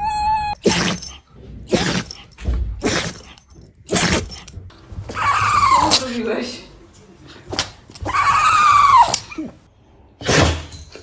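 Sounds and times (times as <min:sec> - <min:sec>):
dog sneezing: 0:00.6 - 0:06.2, 0:07.5 - 0:09.7.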